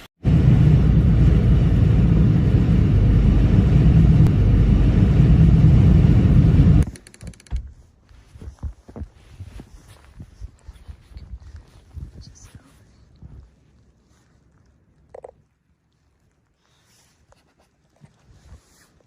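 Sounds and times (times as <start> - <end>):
storm wind buffeting microphone: 0.2 - 6.9.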